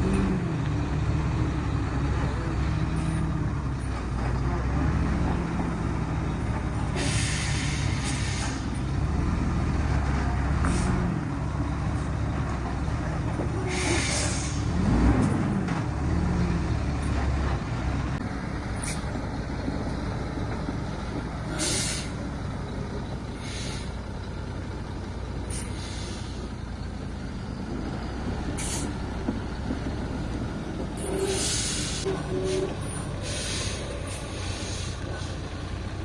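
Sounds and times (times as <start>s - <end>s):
truck engine running: 0.0s - 36.0s
air brake hisses: 7.0s - 8.8s, 13.6s - 14.7s, 21.5s - 22.2s, 23.4s - 23.9s, 25.5s - 26.4s, 28.6s - 29.0s, 31.0s - 35.4s.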